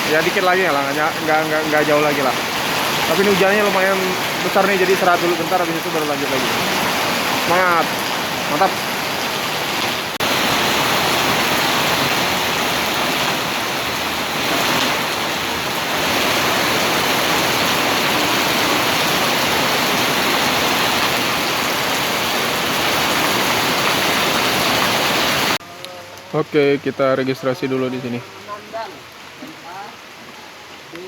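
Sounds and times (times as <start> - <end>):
heavy rain pouring: 0.0 - 31.0.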